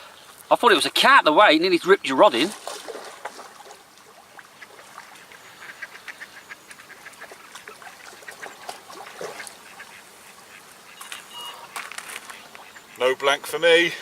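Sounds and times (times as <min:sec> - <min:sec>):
ducks quacking: 0:04.2 - 0:14.0.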